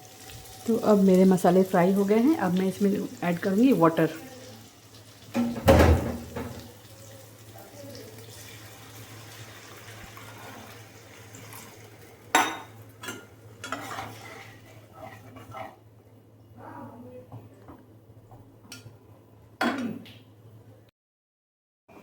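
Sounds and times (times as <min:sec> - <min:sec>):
water hissing in hot pan: 0:00.0 - 0:12.3
curry simmering: 0:00.0 - 0:15.9
metal spoon scraping pan: 0:13.0 - 0:15.8.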